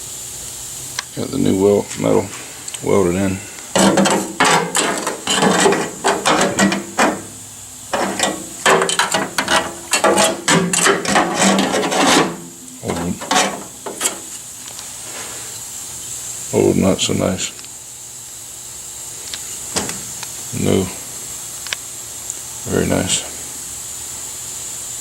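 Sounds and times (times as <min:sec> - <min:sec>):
hand scraping sheet metal: 0:03.7 - 0:14.4.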